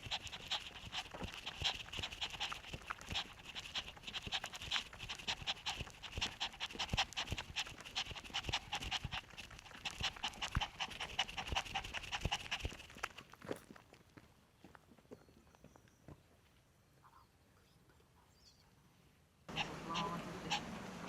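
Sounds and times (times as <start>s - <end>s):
puppy panting: 0.0s - 13.6s, 19.5s - 21.0s.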